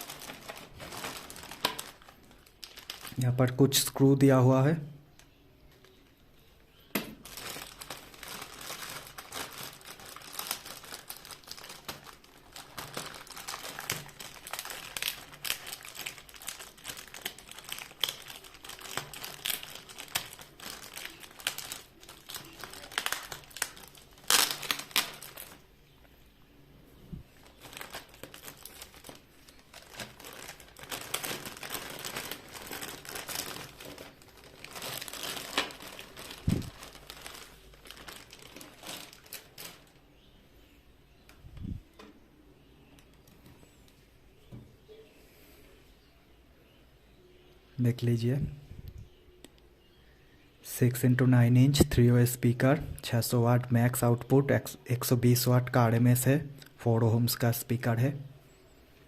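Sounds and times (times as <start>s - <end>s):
packaging crinkling and rustling: 0.0s - 4.2s, 6.7s - 25.7s, 27.1s - 40.3s.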